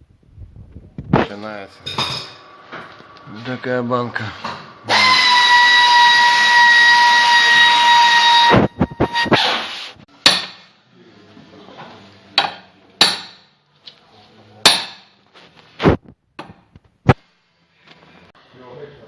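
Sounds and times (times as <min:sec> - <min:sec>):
tool whistling hiss: 0:04.9 - 0:10.0.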